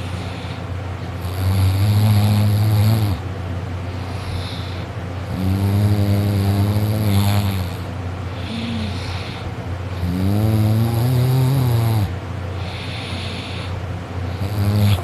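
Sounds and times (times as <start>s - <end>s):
boy snoring loudly: 1.2s - 3.2s, 5.3s - 9.4s, 10.0s - 13.6s, 14.3s - 15.0s
quiet breath: 3.9s - 5.0s, 8.3s - 9.6s, 12.5s - 13.8s.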